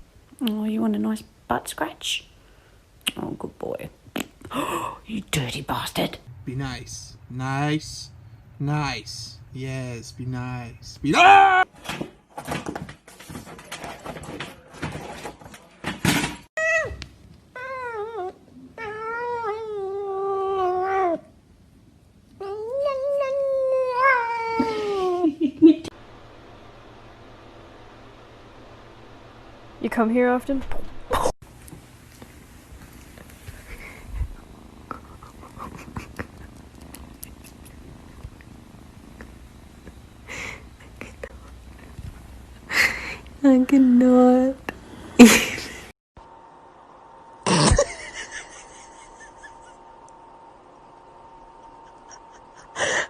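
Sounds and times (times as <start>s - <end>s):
rustling and scuffling: 11.7s - 16.5s
cat purring: 32.3s - 43.2s.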